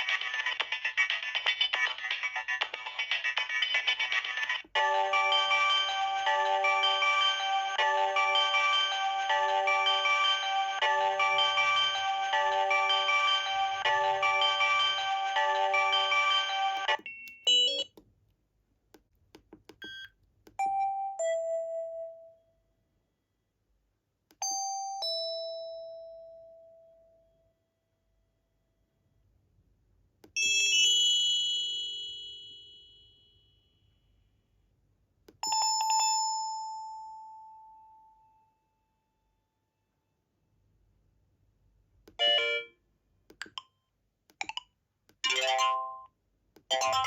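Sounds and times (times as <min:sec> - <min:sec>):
bell-like phone chimes: 0:04.8 - 0:17.9, 0:20.6 - 0:22.4, 0:24.4 - 0:27.1, 0:35.4 - 0:38.6.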